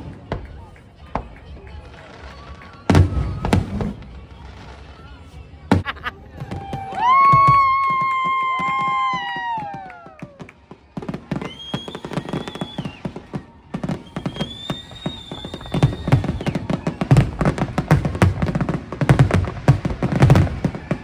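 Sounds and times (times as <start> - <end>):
fireworks booming bursts: 0.0 - 8.0, 10.7 - 21.0
fireworks cracking: 0.0 - 21.0
fireworks crackling: 0.0 - 21.0
fireworks whistling: 2.0 - 5.9, 11.2 - 21.0.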